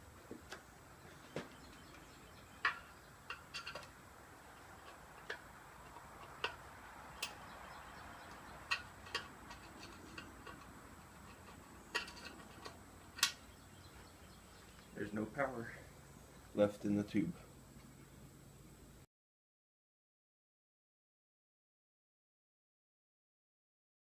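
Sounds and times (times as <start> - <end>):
tools clicking and tapping: 2.6 - 4.0, 4.6 - 13.4.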